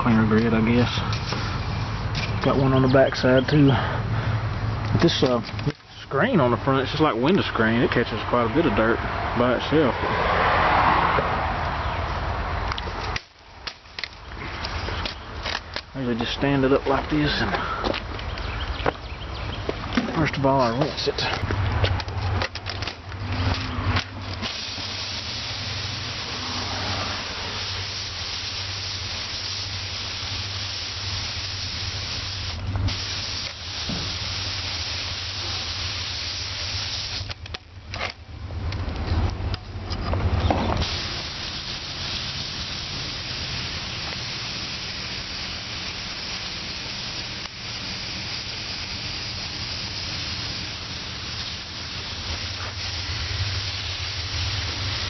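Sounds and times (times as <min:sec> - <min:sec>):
water spraying hiss: 0:24.2 - 0:37.4, 0:40.8 - 0:55.0.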